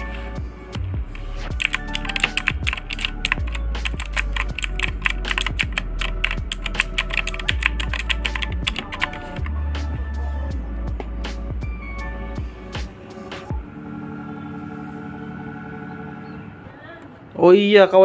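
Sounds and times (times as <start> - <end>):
background music: 0.0 - 18.0
mechanical keyboard typing: 1.6 - 9.5.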